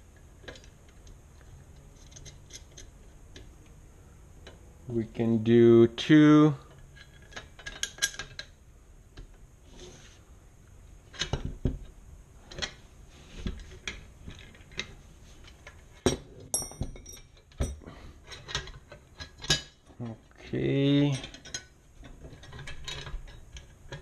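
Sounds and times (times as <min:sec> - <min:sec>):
metal bolts clinking: 0:16.0 - 0:17.8
ringing metal clink: 0:16.1 - 0:17.8.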